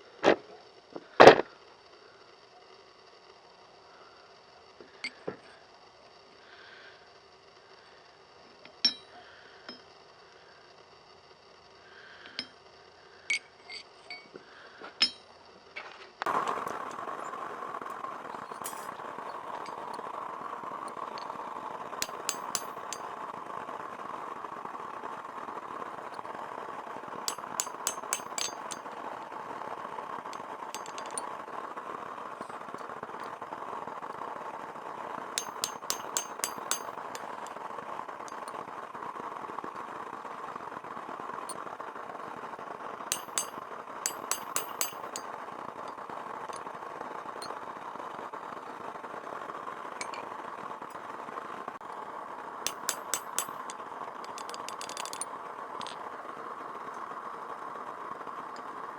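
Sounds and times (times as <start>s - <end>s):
forge burner roaring: 16.3s - 58.9s
metal tools clinking: 17.9s - 20.0s, 22.0s - 23.1s, 27.2s - 28.9s, 30.3s - 31.3s, 35.4s - 37.6s, 43.1s - 45.3s, 52.7s - 56.0s.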